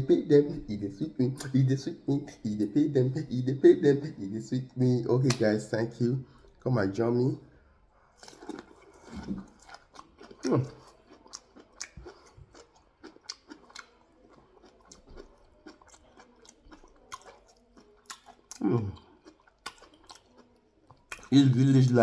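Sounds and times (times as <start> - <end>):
crunchy chewing: 8.0 - 22.0.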